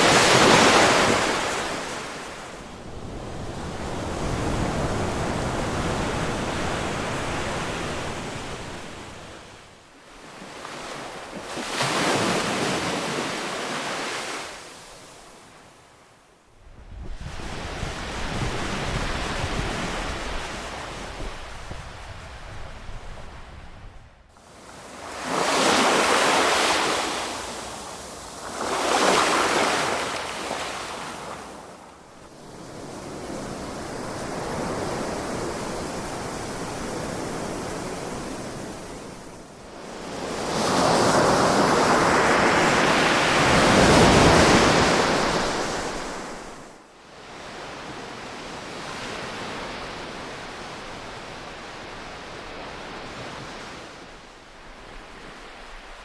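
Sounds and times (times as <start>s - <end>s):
ocean surf breaking on shore: 0.0s - 15.6s, 17.2s - 23.7s, 24.4s - 31.8s, 32.4s - 46.8s.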